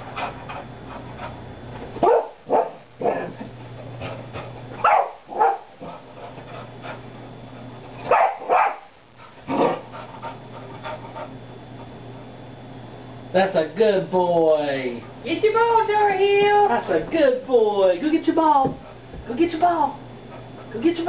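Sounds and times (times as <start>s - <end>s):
dog barking: 2.0s - 3.3s, 4.8s - 5.7s, 8.1s - 8.9s.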